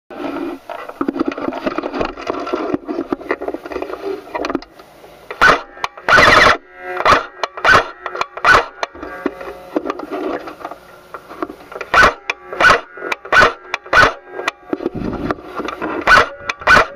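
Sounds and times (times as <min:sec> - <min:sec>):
airsoft gun shots: 0:05.4 - 0:08.9, 0:11.9 - 0:14.3, 0:16.0 - 0:16.9.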